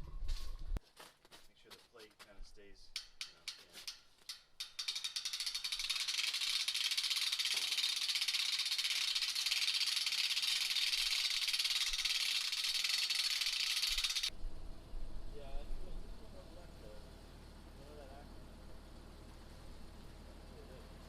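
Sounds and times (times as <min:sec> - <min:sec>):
rapid mechanical rattling: 0:03.0 - 0:14.3.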